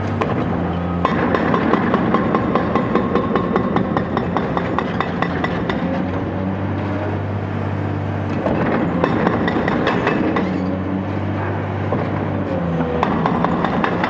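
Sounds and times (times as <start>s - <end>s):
excavator diesel engine running: 0.0s - 14.0s
knocks and clanks on concrete: 0.1s - 6.1s, 8.3s - 10.8s, 11.9s - 14.0s.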